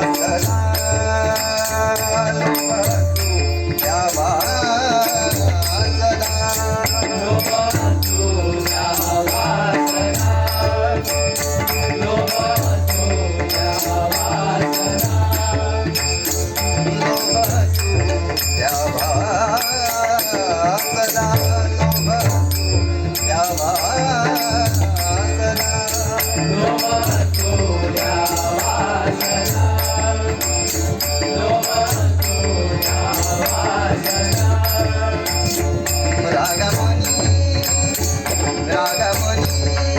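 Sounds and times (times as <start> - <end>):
repeating drum beat: 0.0 - 39.9
wavering devotional melody: 0.0 - 39.9.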